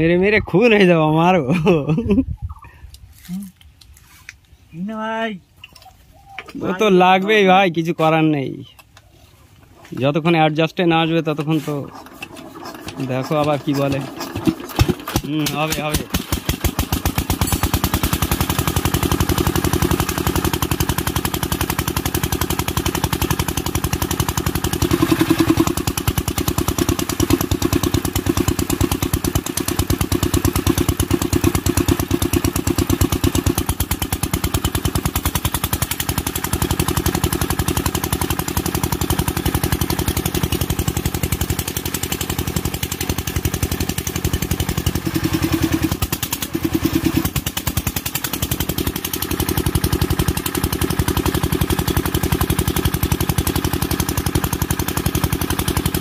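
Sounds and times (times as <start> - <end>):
diesel engine knocking: 12.0 - 56.0.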